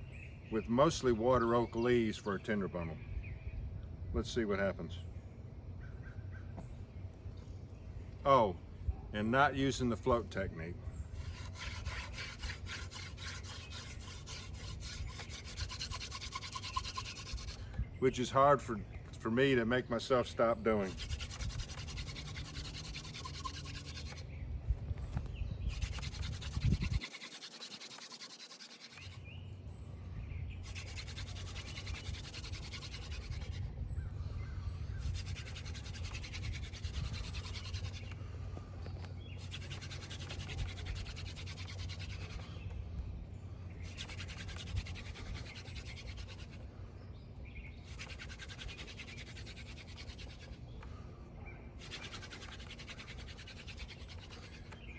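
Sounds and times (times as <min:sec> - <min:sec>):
wooden spindle grinding on board: 0:11.2 - 0:17.7, 0:20.8 - 0:24.4, 0:25.7 - 0:29.3, 0:30.6 - 0:33.7, 0:35.0 - 0:38.2, 0:39.3 - 0:42.7, 0:43.8 - 0:46.6, 0:47.8 - 0:50.7, 0:51.8 - 0:54.9.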